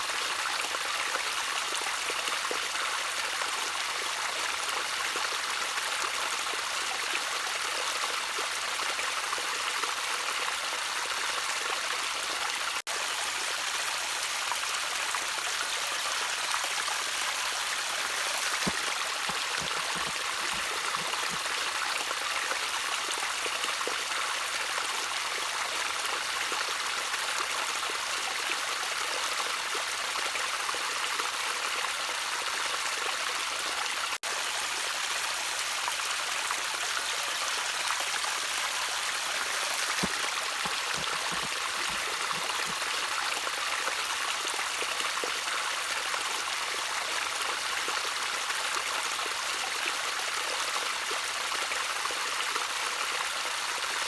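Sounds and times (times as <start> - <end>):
stream trickling: 0.0 - 54.0
water gurgling: 16.1 - 24.1, 39.0 - 45.4.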